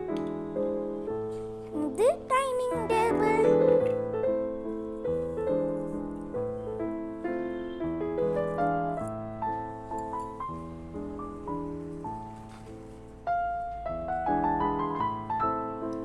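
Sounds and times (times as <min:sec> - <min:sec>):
gentle piano melody: 0:00.0 - 0:16.0.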